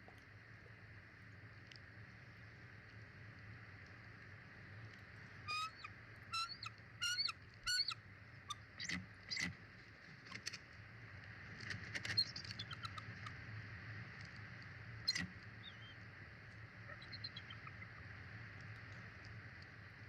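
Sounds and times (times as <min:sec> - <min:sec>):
bird calling: 0:05.5 - 0:09.5, 0:12.1 - 0:13.3, 0:16.9 - 0:18.1
bird chirps and clicks: 0:05.5 - 0:09.5, 0:11.6 - 0:13.4, 0:15.1 - 0:19.8.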